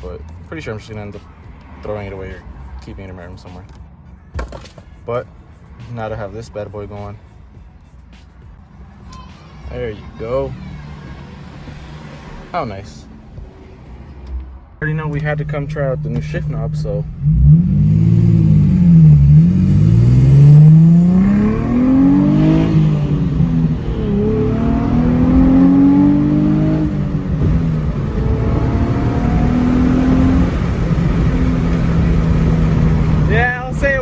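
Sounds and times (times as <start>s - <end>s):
car engine revving: 8.1s - 34.0s.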